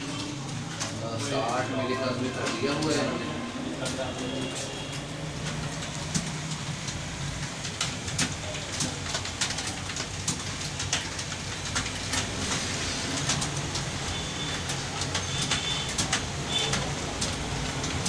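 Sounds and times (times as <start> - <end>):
keyboards clattering: 0.0 - 18.0.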